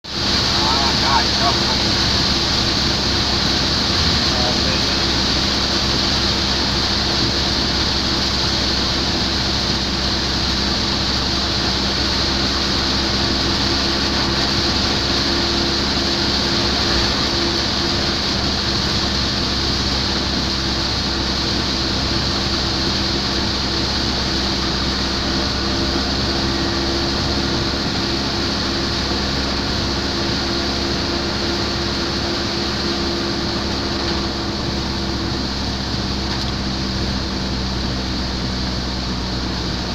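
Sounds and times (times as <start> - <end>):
engine drone: 0.0 - 39.9
heavy rain: 0.0 - 39.9
tyres hissing on wet road: 0.1 - 39.9.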